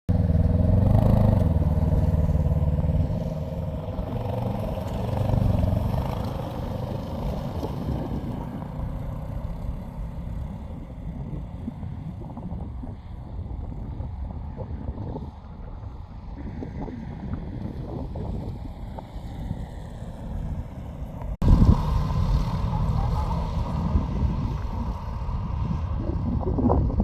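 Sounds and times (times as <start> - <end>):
snowmobile engine running: 0.1 - 27.0.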